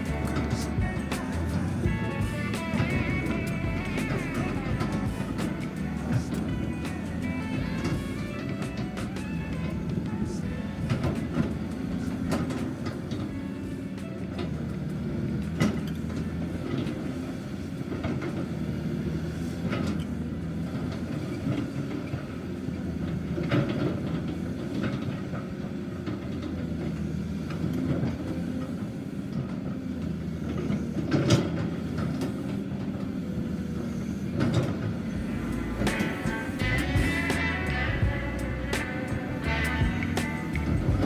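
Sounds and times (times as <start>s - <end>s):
excavator diesel engine drone: 0.0s - 41.0s.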